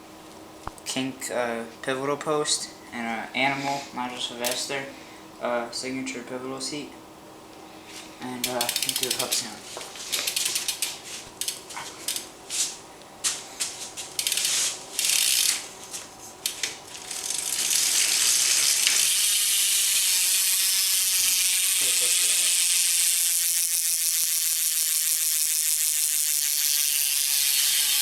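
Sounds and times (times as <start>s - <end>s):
bicycle hub freewheel clicking: 8.4s - 9.5s, 10.1s - 12.3s, 14.2s - 15.7s, 16.4s - 28.0s.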